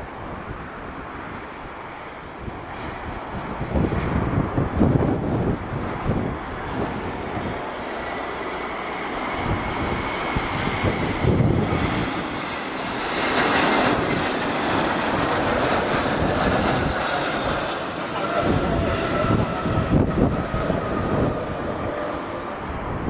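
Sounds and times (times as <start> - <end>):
jet engines whining: 0.0 - 23.0.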